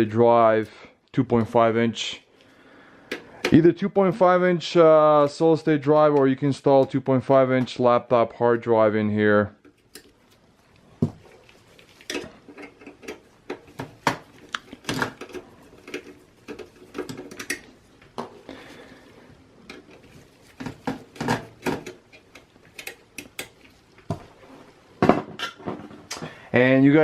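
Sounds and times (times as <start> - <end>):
metal and plastic parts clattering: 11.9 - 17.8, 19.6 - 23.5.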